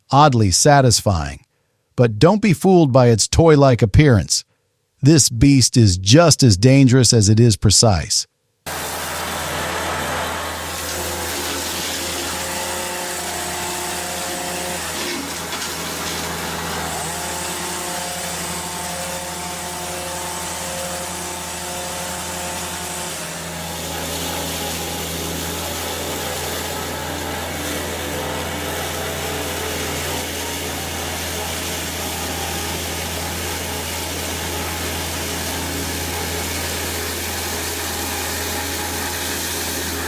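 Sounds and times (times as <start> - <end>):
machine engine hum: 8.7 - 40.0
machine whine: 8.7 - 40.0.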